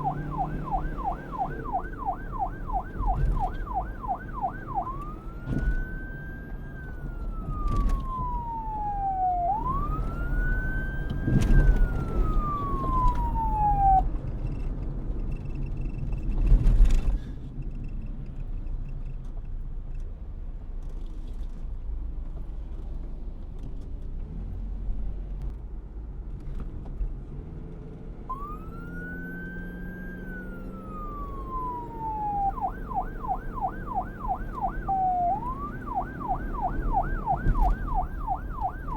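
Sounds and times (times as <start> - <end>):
police siren wailing: 0.0 - 14.1, 28.3 - 38.9
low traffic rumble: 0.0 - 38.9.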